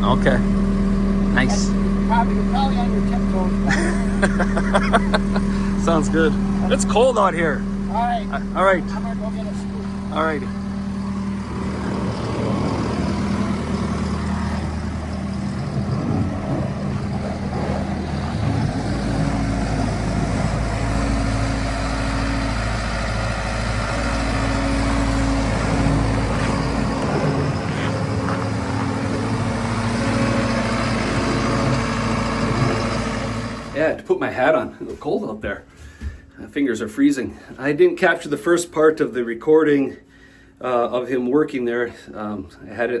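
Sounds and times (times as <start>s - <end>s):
skid steer diesel engine: 0.0s - 34.1s.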